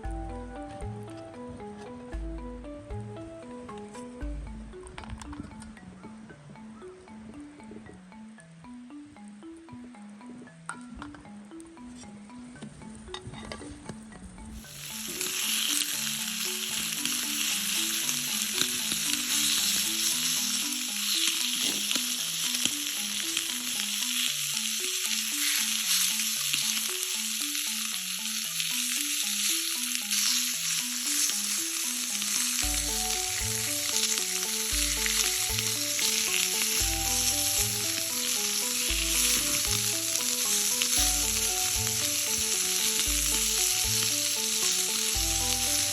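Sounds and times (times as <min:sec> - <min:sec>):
background music: 0:00.0 - 0:45.9
food sizzling in a pan: 0:14.6 - 0:45.9
bass line: 0:32.6 - 0:33.8, 0:34.7 - 0:35.9, 0:36.8 - 0:38.0, 0:38.9 - 0:40.1, 0:41.0 - 0:42.2, 0:45.2 - 0:45.9.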